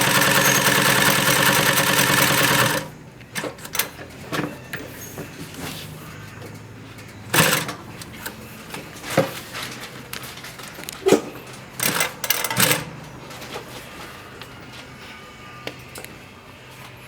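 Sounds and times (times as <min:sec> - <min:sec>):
sewing machine stitching: 0:00.0 - 0:03.9.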